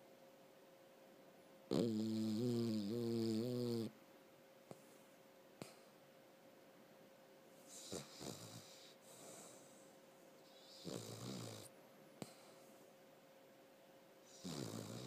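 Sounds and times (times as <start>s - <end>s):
faint steady hum: 0.0s - 15.0s
person snoring: 14.3s - 15.0s.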